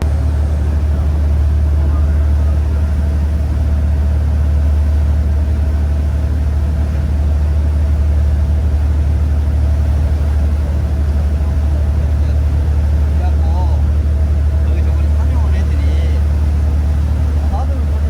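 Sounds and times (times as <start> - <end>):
engine droning: 0.0 - 18.0.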